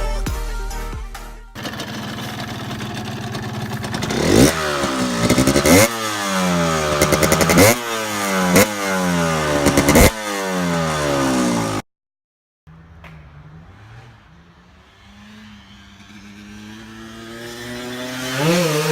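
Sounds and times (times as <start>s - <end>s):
stuttering engine bursts: 1.6s - 11.8s
motorcycle engine revving: 1.6s - 11.9s, 12.7s - 18.9s.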